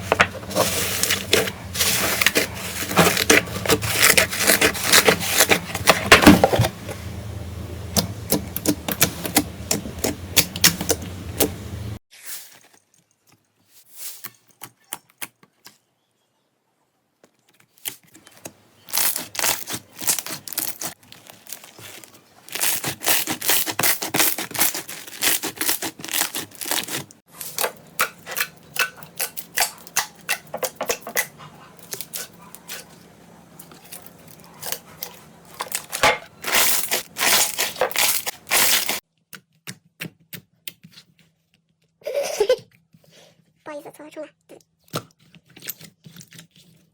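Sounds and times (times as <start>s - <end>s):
slime crackling and popping: 18.9s - 27.0s.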